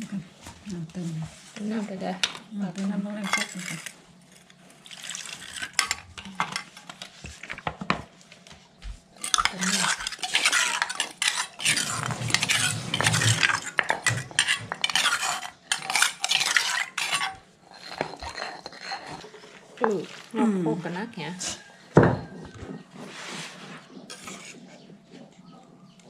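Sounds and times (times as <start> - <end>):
spoon scraping in a bowl: 3.2 - 7.1, 9.2 - 20.3, 21.3 - 24.9.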